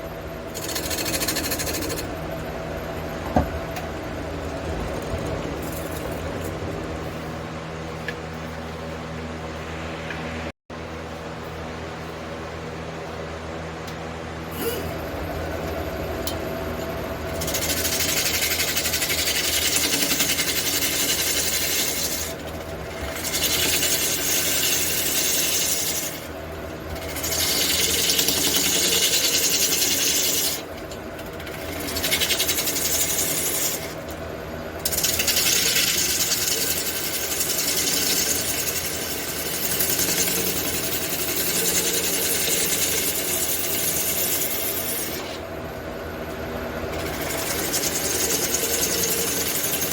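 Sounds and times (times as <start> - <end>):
lathe motor hum: 0.0 - 10.5, 14.6 - 49.9
turning tool cutting wood: 0.5 - 2.1, 17.3 - 34.2, 34.8 - 45.5, 46.9 - 49.9.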